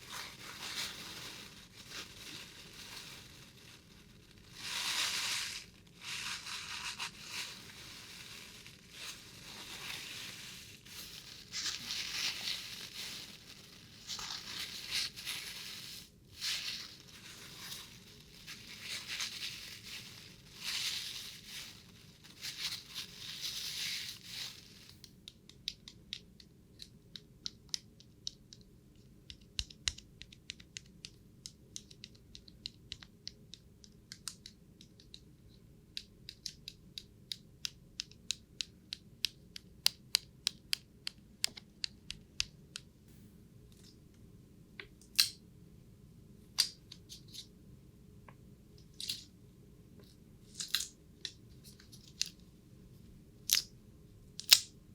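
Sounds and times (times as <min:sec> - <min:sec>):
crinkling handling noise: 0:00.0 - 0:25.2, 0:50.0 - 0:53.7
small sharp irregular clicks: 0:24.8 - 0:43.0, 0:54.4 - 0:54.8.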